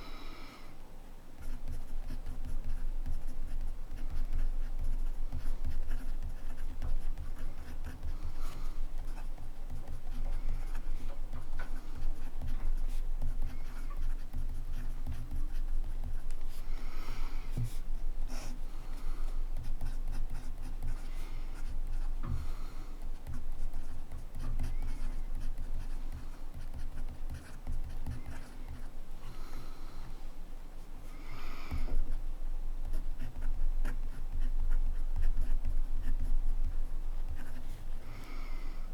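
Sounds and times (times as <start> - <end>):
pen nib scratching on paper: 1.4 - 16.7, 19.4 - 28.9, 32.8 - 37.6.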